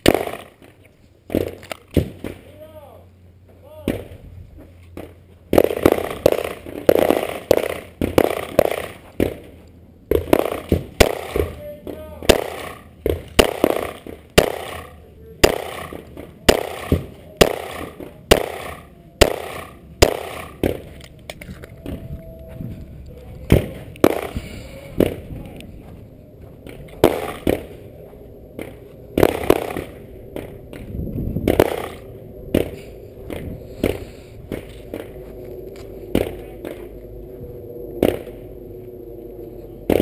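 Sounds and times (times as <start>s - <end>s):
pistol shots with ringing echo: 0.0s - 0.6s, 5.5s - 9.4s, 10.1s - 21.0s, 23.5s - 25.3s, 26.9s - 27.8s, 28.6s - 30.8s, 31.4s - 34.0s.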